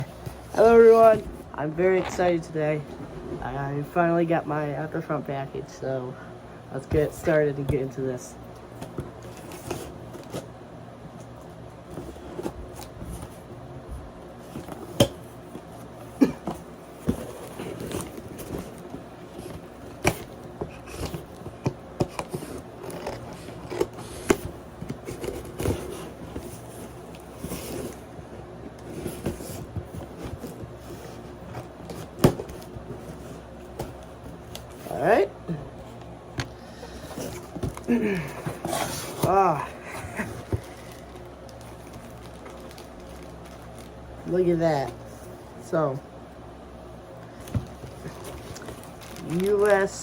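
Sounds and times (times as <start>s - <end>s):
packaging scraping and rustling: 16.6s - 28.2s, 28.8s - 35.2s, 36.9s - 44.1s, 47.4s - 50.0s.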